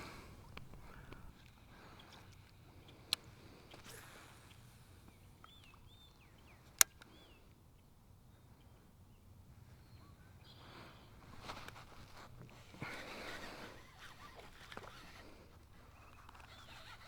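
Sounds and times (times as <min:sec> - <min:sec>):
sharp clicks: 0:00.2 - 0:01.3, 0:06.6 - 0:07.2
faint bird chirps: 0:03.7 - 0:11.5, 0:12.9 - 0:17.0.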